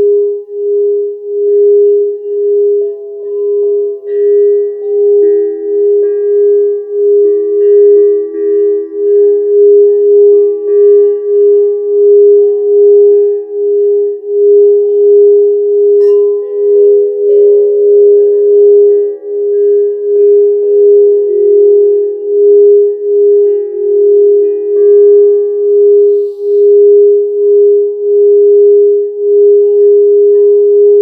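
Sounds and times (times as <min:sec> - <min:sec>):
crystal singing bowl tone: 0:00.0 - 0:31.0
singing bowl strike: 0:24.0 - 0:30.6.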